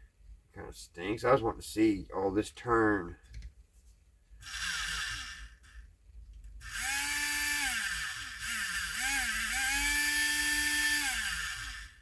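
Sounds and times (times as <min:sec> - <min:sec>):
small electric motor whining: 0:04.4 - 0:05.8, 0:06.6 - 0:12.0.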